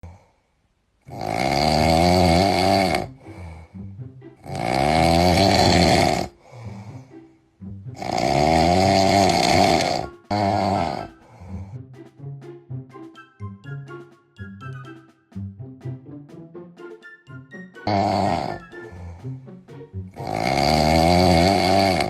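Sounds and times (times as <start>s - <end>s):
man snoring loudly: 1.1s - 3.5s, 4.4s - 6.8s, 8.0s - 11.6s, 17.9s - 19.1s, 20.2s - 22.0s.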